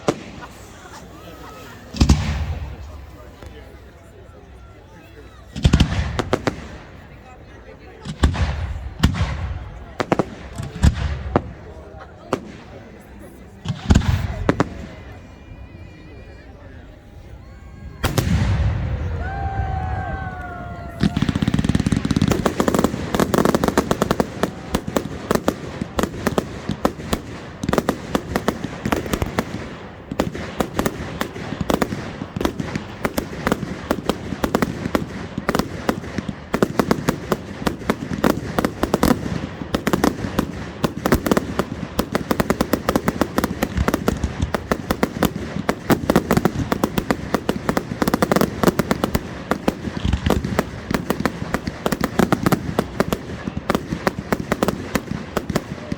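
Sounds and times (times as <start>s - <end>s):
fireworks bangs and crackles: 0.0s - 55.9s.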